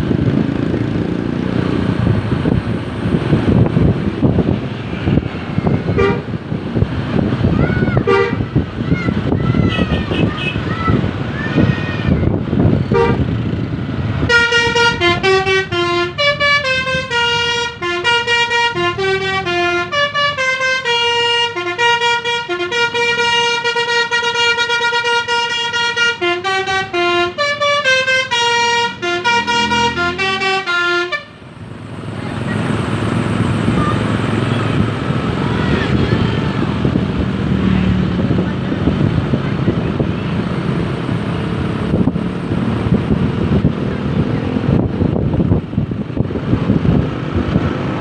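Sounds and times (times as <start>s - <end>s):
vehicle noise: 0.0s - 48.0s
bus musical horn tune: 5.6s - 6.4s, 8.0s - 8.4s, 12.9s - 13.4s, 14.2s - 31.4s.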